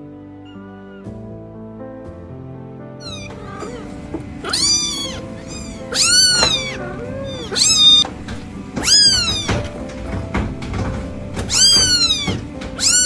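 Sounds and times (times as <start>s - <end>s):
background music: 0.0s - 13.0s
kitten meowing: 3.0s - 9.8s, 10.7s - 13.0s.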